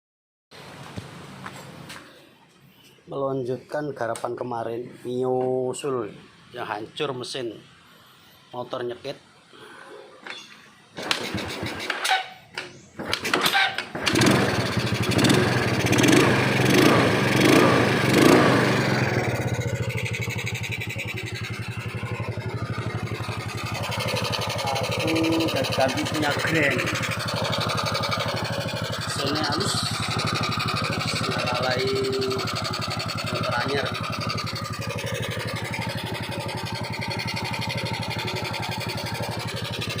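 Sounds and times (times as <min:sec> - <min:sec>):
scooter engine cranking and running: 0:11.0 - 0:40.0.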